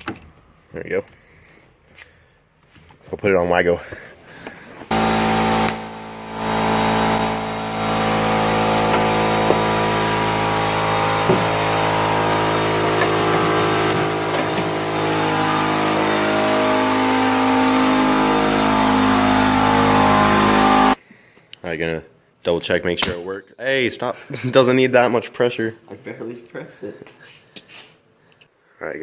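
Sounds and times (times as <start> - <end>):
motor humming: 4.9 - 21.0.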